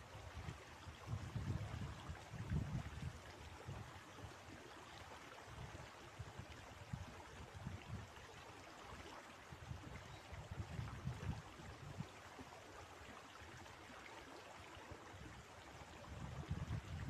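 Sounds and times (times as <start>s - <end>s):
river water flowing: 0.0s - 17.0s
wind buffeting microphone: 0.9s - 3.8s, 9.6s - 12.1s, 16.1s - 17.0s.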